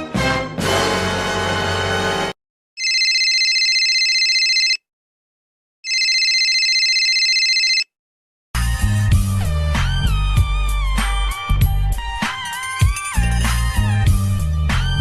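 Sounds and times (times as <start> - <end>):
telephone ringing: 2.8 - 4.8, 5.8 - 7.9.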